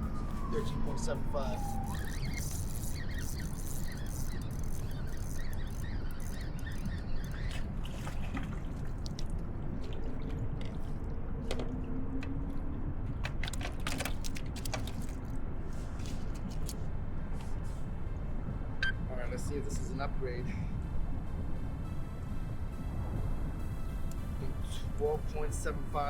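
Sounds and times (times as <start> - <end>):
water splashing and dripping: 0.2 - 16.8
small clicks and knocks: 13.2 - 15.3
steady low rumble: 15.2 - 26.0.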